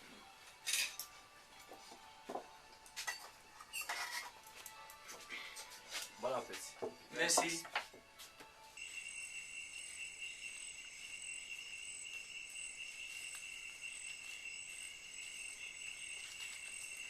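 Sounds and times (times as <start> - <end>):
insects chirring: 8.8 - 17.0.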